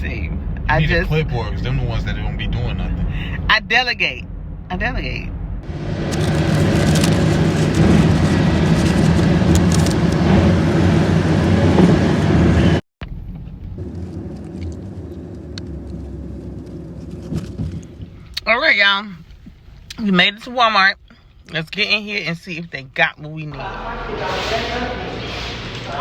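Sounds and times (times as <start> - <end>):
car cabin road noise: 0.0 - 20.8
quieter steady rumble: 0.0 - 26.0.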